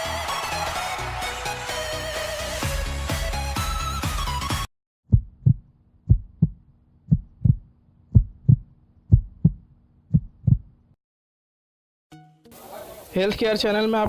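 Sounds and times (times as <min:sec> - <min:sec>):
heartbeat double thumps: 0:05.1 - 0:10.8.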